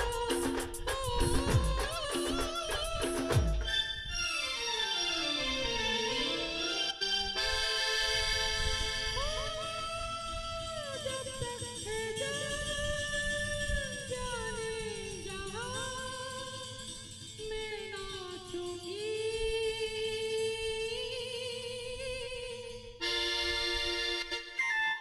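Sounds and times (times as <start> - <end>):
drums and bass: 0.0 - 3.7
steady keyboard notes: 2.7 - 10.3, 23.0 - 25.0.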